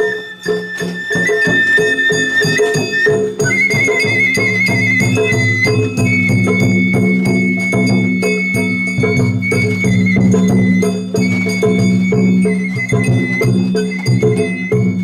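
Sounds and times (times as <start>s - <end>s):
drum strokes: 0.0s - 15.0s
high bamboo flute: 0.0s - 15.0s.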